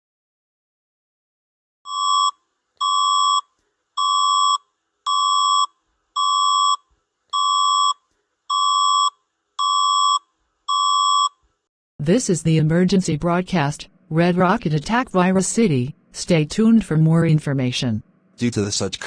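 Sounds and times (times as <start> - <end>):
electronic alarm tone beeping: 1.9 - 6.8, 7.4 - 11.4.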